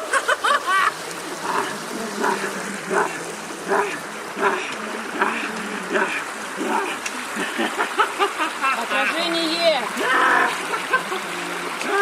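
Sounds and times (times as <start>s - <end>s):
water splashing rhythmically: 0.0s - 12.0s.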